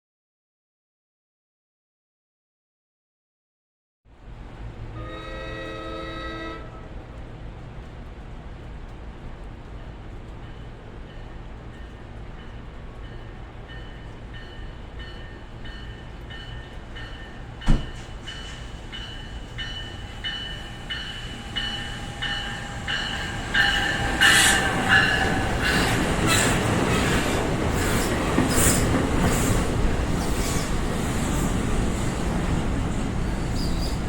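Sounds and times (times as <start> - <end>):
train rolling past rumble: 4.1 - 34.0
train bell ringing: 10.4 - 27.0
sharp knock: 17.6 - 18.1.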